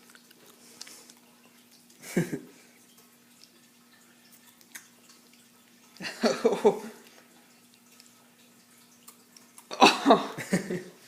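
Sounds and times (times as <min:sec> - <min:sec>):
person chewing crunchy food: 0:00.0 - 0:02.0, 0:03.0 - 0:06.2, 0:06.8 - 0:09.9
faint steady hum: 0:00.0 - 0:11.0.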